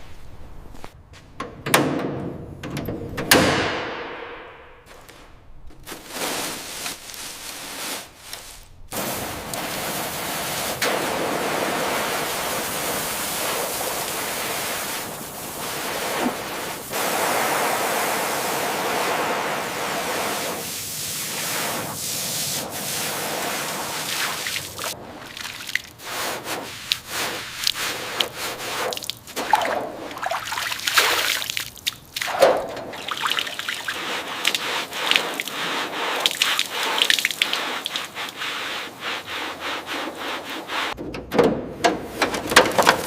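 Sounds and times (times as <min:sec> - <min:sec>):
hiss of spraying water: 0:06.0 - 0:31.8, 0:32.9 - 0:41.0.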